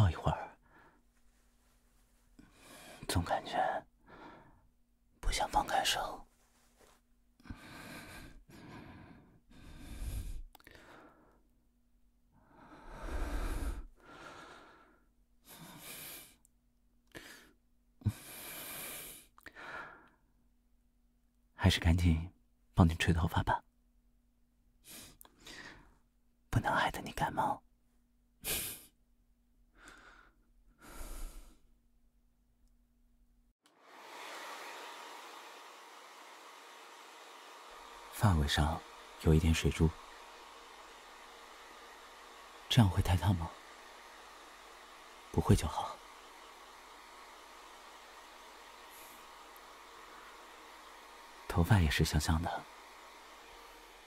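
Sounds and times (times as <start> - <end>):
man breathing and sighing: 2.2 - 3.1, 7.4 - 11.4, 12.4 - 16.4, 17.1 - 20.2, 24.8 - 26.0, 29.7 - 31.8
hair dryer running: 33.7 - 54.0.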